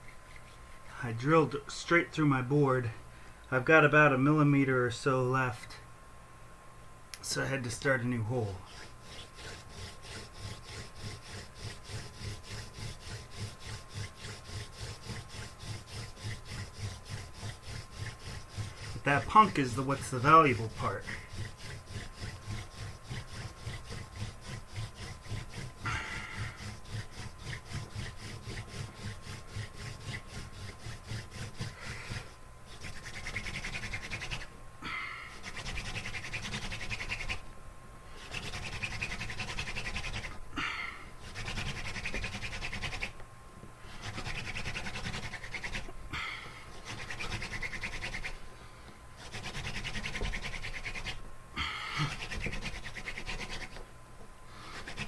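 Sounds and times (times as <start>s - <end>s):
wood rubbing on wood: 7.3s - 34.6s, 35.3s - 37.4s, 38.2s - 40.4s, 41.2s - 43.2s, 43.9s - 46.0s, 46.7s - 48.4s, 49.2s - 53.9s, 54.6s - 55.0s.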